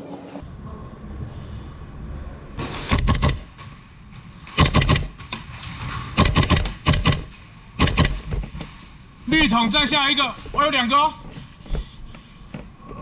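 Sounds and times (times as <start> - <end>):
airsoft gunfire cracks: 4.5 - 5.1.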